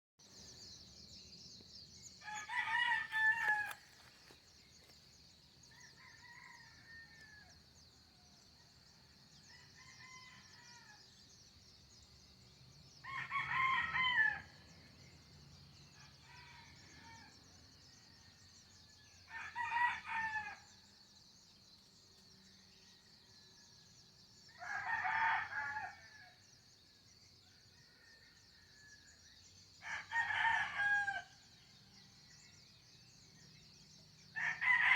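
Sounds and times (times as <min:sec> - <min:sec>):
distant rooster crowing: 0:02.2 - 0:03.9, 0:05.7 - 0:07.6, 0:34.4 - 0:34.9
rooster crowing: 0:02.2 - 0:03.9, 0:05.7 - 0:07.5.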